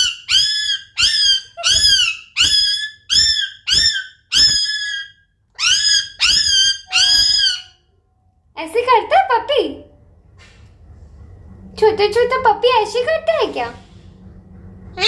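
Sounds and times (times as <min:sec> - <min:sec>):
parrot imitating puppy yelps: 0:00.0 - 0:07.8.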